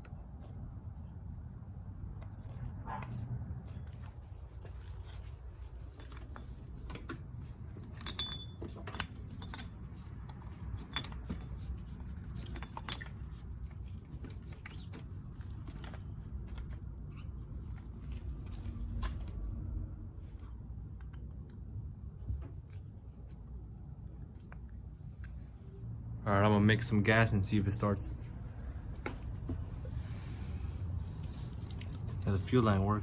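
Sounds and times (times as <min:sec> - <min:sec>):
low steady rumble: 0:00.0 - 0:33.0
metal parts clinking: 0:03.6 - 0:16.8, 0:30.6 - 0:33.0.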